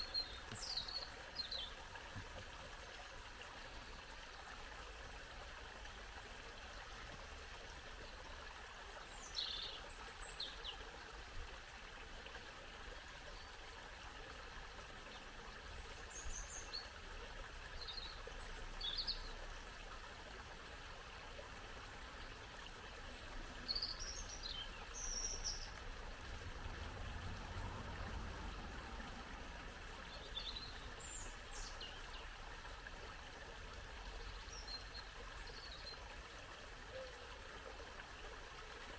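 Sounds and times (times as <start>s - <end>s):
songbirds chirping: 0.0s - 4.6s, 6.7s - 10.9s, 15.0s - 20.3s, 21.9s - 27.4s, 29.4s - 36.2s
brook babbling over stones: 0.0s - 38.9s.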